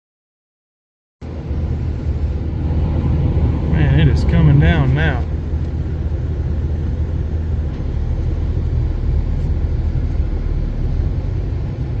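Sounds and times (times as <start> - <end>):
vehicle engine and road noise: 1.2 - 12.0.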